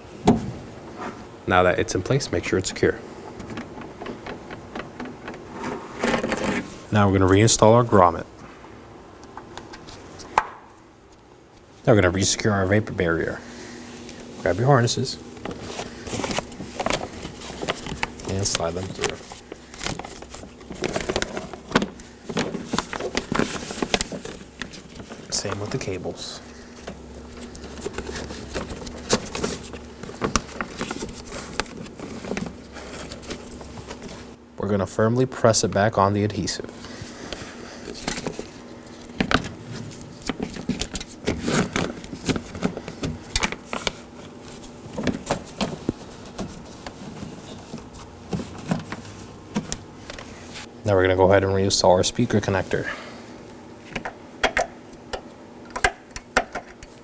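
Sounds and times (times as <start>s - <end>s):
plastic sheet crinkling: 14.0s - 34.4s.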